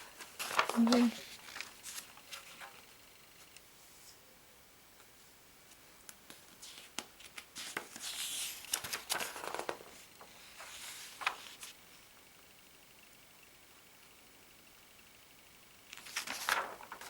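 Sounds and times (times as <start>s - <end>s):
magazine paper rustling: 0.0s - 2.9s, 6.3s - 11.8s, 15.9s - 17.0s
pages turning clicks and taps: 0.2s - 2.8s, 5.7s - 10.0s, 15.9s - 17.0s.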